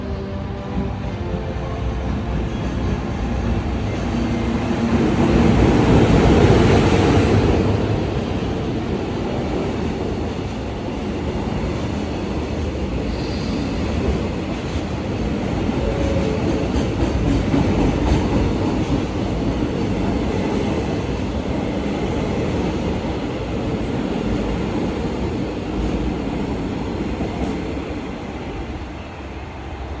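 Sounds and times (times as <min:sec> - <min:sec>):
freight train passing: 0:00.0 - 0:30.0.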